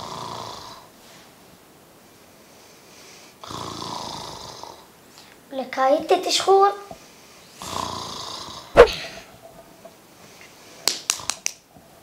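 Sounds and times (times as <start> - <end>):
loud snort: 3.4 - 4.8, 7.6 - 9.1
quick sharp clicks: 8.8 - 9.0.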